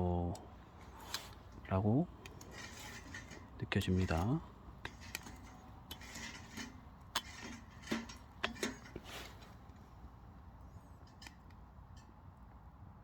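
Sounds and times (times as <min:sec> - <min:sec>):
logs crackling and popping in stove: 0:00.0 - 0:10.1.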